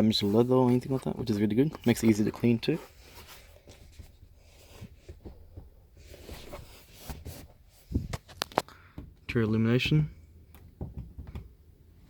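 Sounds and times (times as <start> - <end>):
soft rustles: 0.0 - 8.7.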